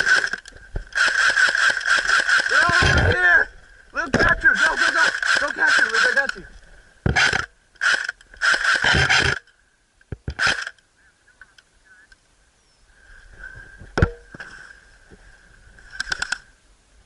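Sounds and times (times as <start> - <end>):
airsoft gunshots: 4.6 - 6.3.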